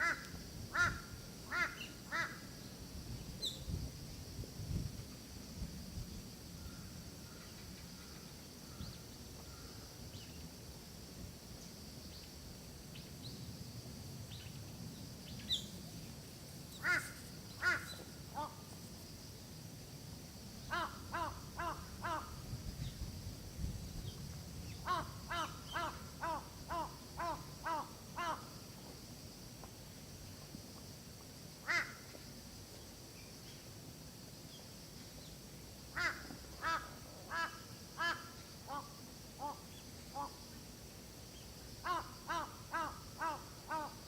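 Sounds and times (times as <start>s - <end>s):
crow cawing: 0.8s - 2.4s, 16.8s - 18.5s, 36.0s - 39.6s, 41.9s - 43.9s.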